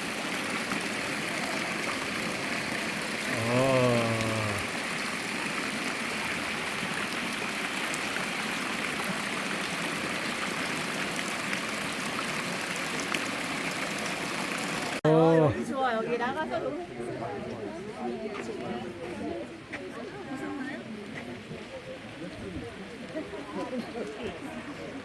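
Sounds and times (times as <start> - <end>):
fountain water splashing: 0.0 - 15.0
person speaking: 3.3 - 4.7.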